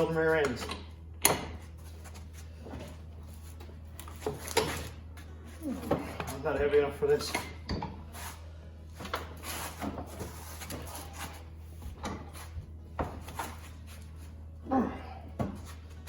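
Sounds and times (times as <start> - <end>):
steady low hum: 0.0 - 16.0
person grunting: 14.6 - 15.3.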